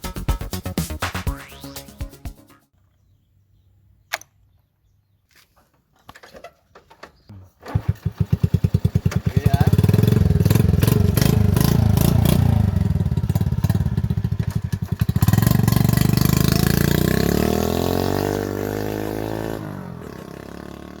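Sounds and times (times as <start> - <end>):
motorcycle engine revving: 7.6 - 21.0.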